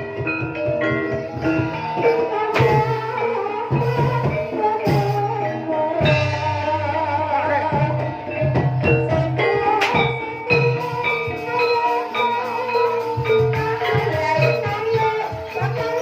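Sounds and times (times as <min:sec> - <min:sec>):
drum strokes: 0:00.0 - 0:16.0
tuned percussion notes: 0:00.0 - 0:16.0
wavering melody line: 0:00.0 - 0:16.0.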